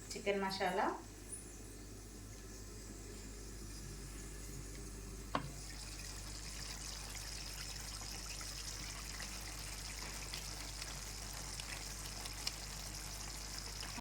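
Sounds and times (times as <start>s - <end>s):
curry sizzling in a pan: 5.4s - 14.0s.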